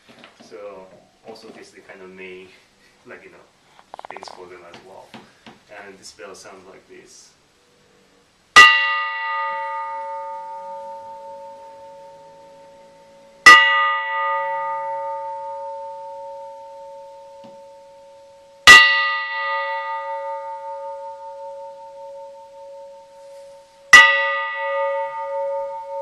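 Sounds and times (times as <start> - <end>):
church bell ringing: 8.6 - 26.0.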